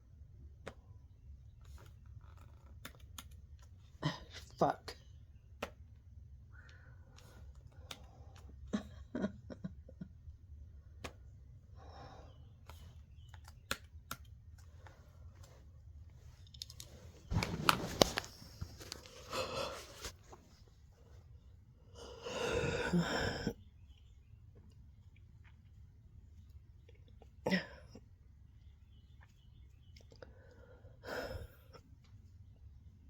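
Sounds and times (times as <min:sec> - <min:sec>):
small clicks and rustles: 0:00.6 - 0:03.9, 0:12.6 - 0:20.8
person breathing: 0:11.7 - 0:13.0.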